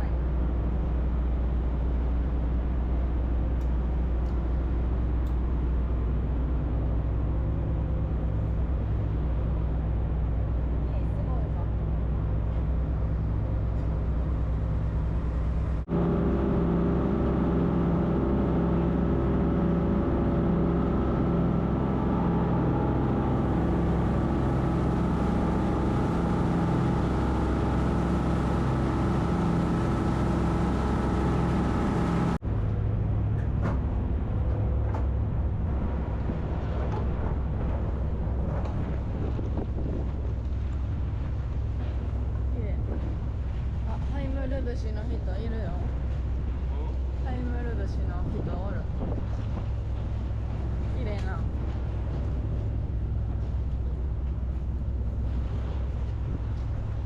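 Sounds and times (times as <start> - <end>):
ferry engine running: 0.0 - 57.0
wind buffeting microphone: 15.4 - 57.0.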